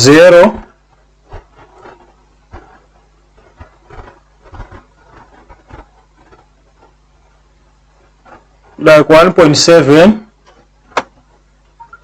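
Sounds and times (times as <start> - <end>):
probes tapping and scratching: 0.0 - 8.9, 10.4 - 12.0
faint low hum: 0.0 - 12.0.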